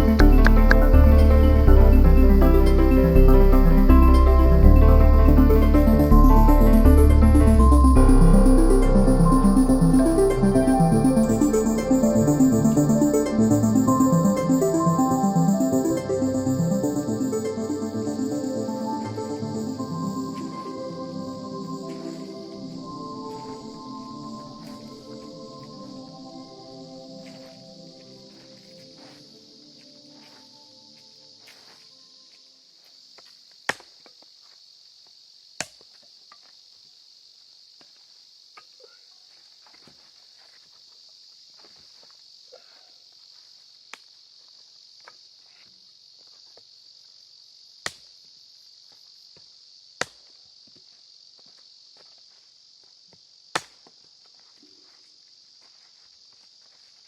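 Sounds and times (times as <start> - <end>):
high-pitched insect chirring: 0.0 - 31.4.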